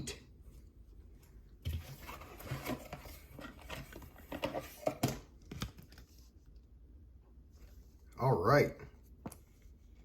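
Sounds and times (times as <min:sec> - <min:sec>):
cards and plastic sleeves rustling: 0:01.6 - 0:06.4.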